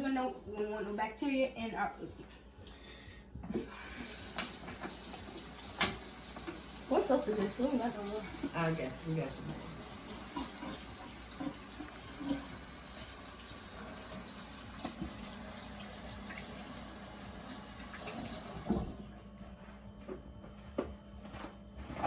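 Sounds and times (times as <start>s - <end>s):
tap water running: 3.8s - 19.1s.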